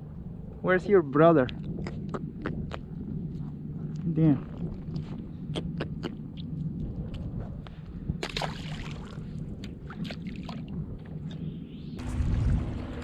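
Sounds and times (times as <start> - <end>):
water sloshing and splashing: 8.2 - 13.0.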